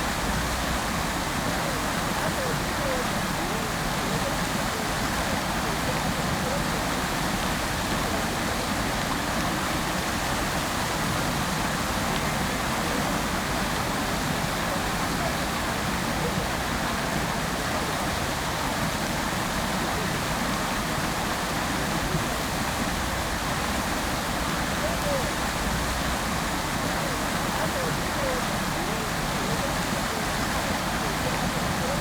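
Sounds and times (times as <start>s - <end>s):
fountain water splashing: 0.0s - 32.0s.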